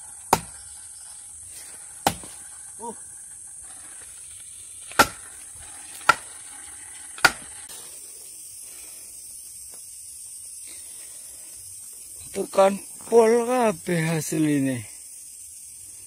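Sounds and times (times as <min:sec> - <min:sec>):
hammer striking steel wedge: 0:00.3 - 0:00.6.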